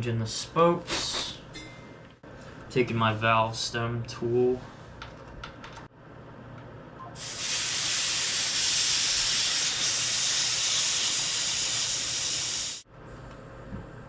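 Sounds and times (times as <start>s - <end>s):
air hissing from tire valve: 7.2s - 12.8s.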